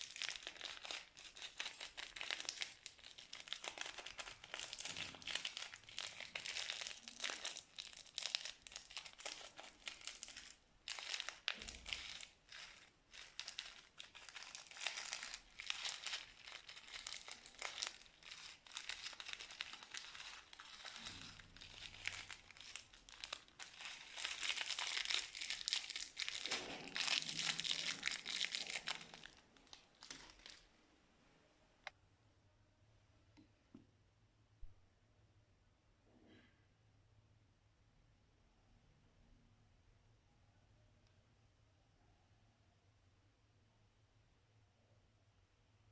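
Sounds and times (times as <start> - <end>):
plastic bags crinkling with slime: 0.0 - 30.8.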